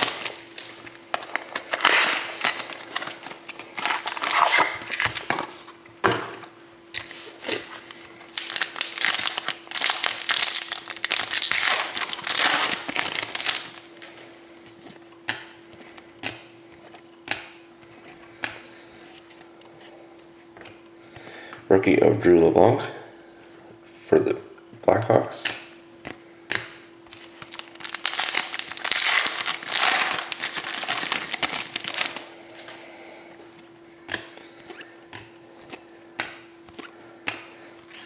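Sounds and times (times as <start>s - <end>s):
foil wrappers crinkling and tearing: 0.0s - 5.5s, 7.0s - 14.2s, 27.1s - 32.7s
faint steady hum: 0.0s - 38.0s
cards tapping and clicking: 35.1s - 37.5s.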